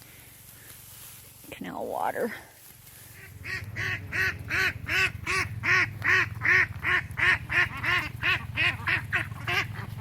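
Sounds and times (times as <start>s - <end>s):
steady low hum: 0.0s - 10.0s
waterfowl calling: 3.0s - 10.0s.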